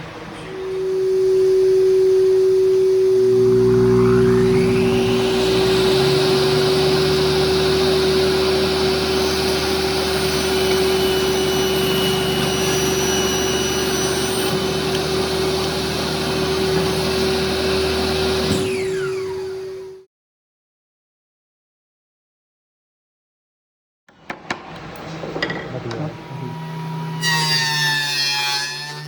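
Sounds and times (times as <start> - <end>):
electric motor whining: 0.6 - 20.0.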